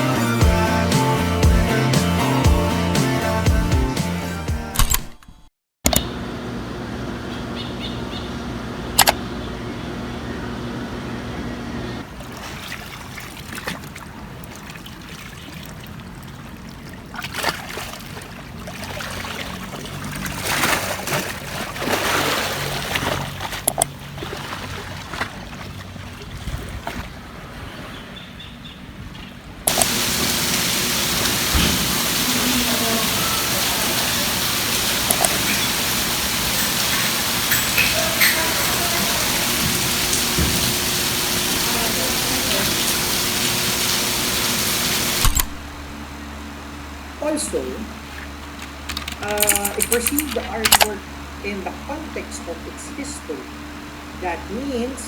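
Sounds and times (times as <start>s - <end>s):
water splashing and trickling: 12.0s - 28.0s, 29.1s - 46.0s
heavy rain hiss: 29.7s - 46.0s.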